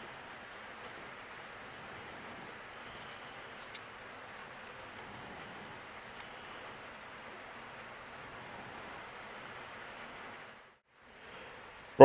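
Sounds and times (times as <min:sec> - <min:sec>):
faint hiss: 0:00.0 - 0:12.0
faint ticks: 0:01.8 - 0:06.8.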